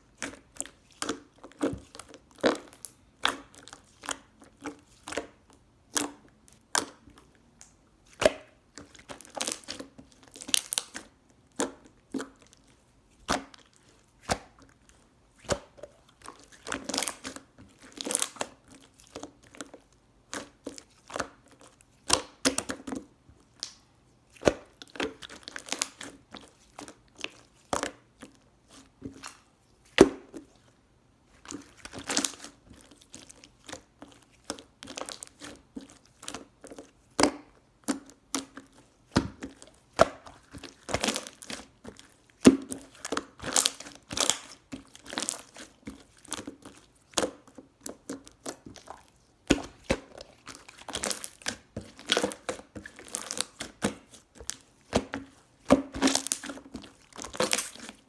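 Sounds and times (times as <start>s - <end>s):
crinkling and rustling handling noise: 8.7s - 58.0s.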